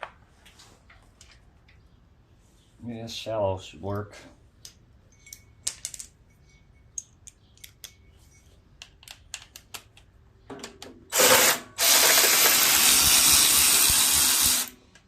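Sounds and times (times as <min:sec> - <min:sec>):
power drill spinning: 0:11.1 - 0:14.8.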